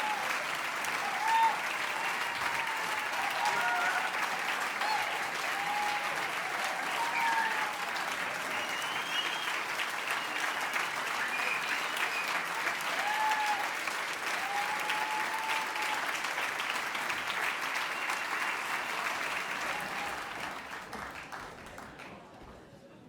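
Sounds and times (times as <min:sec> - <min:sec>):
audience applauding: 0:00.0 - 0:22.3
whistles: 0:08.4 - 0:12.5, 0:17.8 - 0:19.7.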